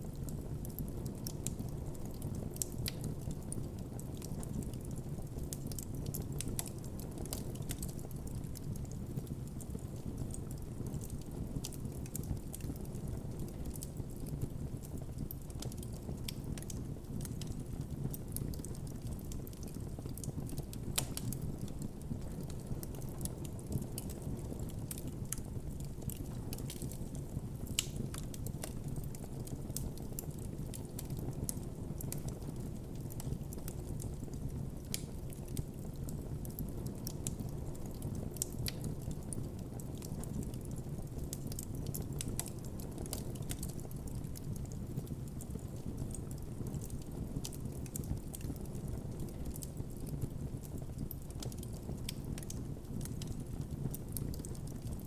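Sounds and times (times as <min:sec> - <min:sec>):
campfire crackling: 0:00.0 - 0:55.0
low rumble of flames: 0:00.0 - 0:55.0
sharp pops from fire: 0:14.9 - 0:55.0.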